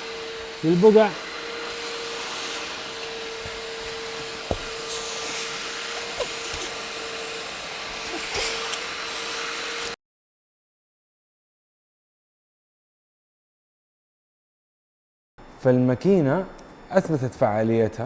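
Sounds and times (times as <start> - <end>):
suction motor whining: 0.0 - 10.0
tool knocking against seat: 3.4 - 6.7.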